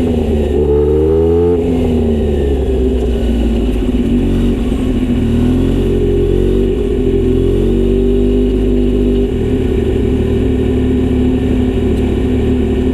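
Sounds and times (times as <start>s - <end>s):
motorcycle engine running: 0.0s - 12.9s.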